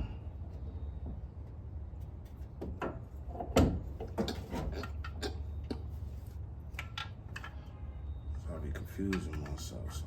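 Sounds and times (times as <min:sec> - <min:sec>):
tools and parts clicking and knocking: 0:06.7 - 0:07.6.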